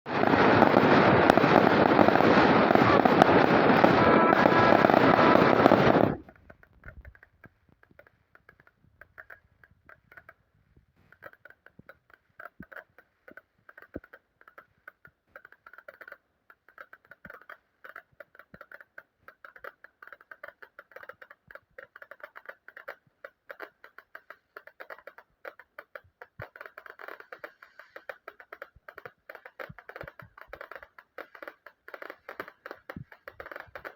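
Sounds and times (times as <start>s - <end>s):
firework rushing hiss: 0.1s - 6.2s
firework crackling pops: 0.1s - 6.3s, 26.4s - 33.9s.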